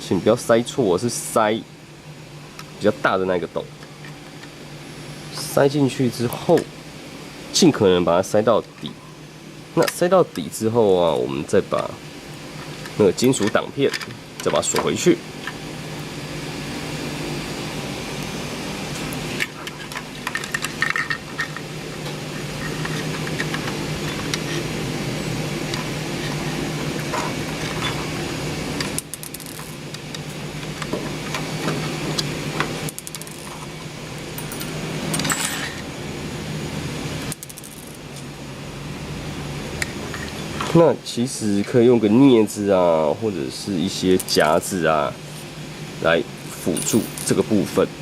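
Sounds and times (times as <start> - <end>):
steady background hum: 0.0 - 48.0
small metal parts clinking: 19.7 - 21.6, 29.0 - 29.8, 32.9 - 33.7, 34.4 - 35.8, 37.3 - 38.0, 46.7 - 47.4.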